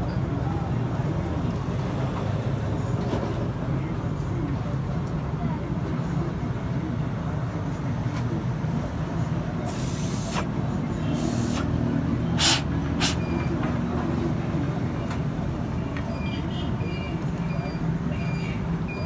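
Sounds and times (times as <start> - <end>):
short hisses: 9.6 - 13.3.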